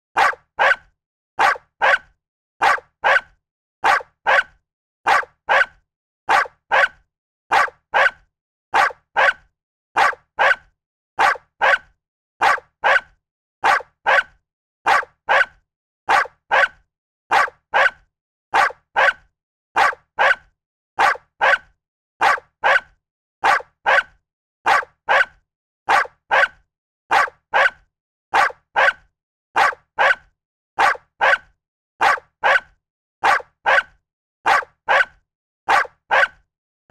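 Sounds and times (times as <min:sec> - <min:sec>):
dog barking: 0:00.2 - 0:36.4.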